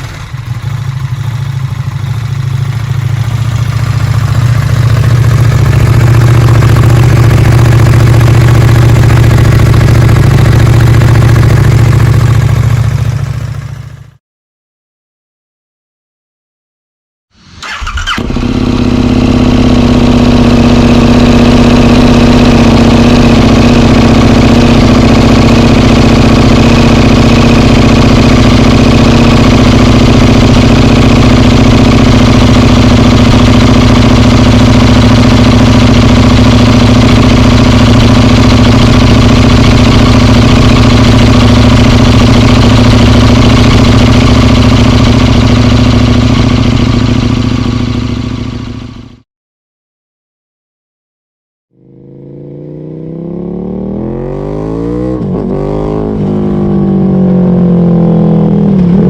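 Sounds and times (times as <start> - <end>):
motorcycle engine idling: 0.0 - 14.2, 17.6 - 49.2.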